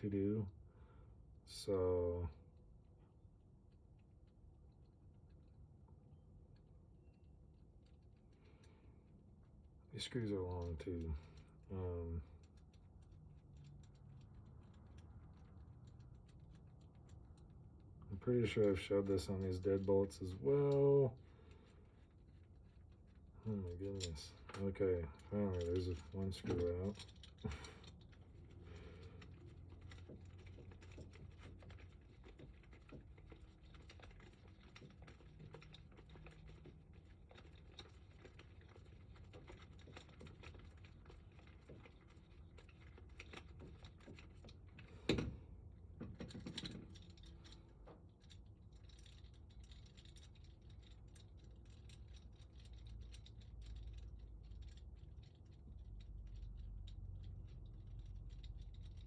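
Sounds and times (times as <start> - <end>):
screws clicking and scratching: 18.6 - 45.2, 46.2 - 59.0.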